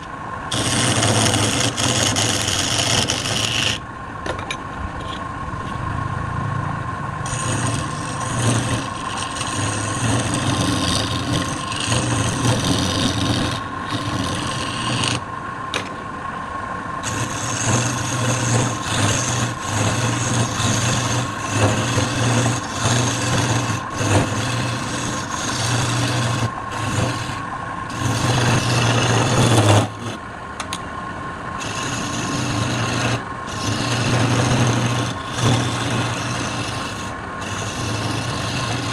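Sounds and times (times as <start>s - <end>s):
wood lathe running: 0.0s - 3.8s, 7.2s - 15.9s, 17.0s - 30.8s, 31.6s - 38.9s
tool scraping spinning wood: 0.0s - 5.9s, 7.2s - 16.0s, 17.0s - 30.8s, 31.6s - 38.9s.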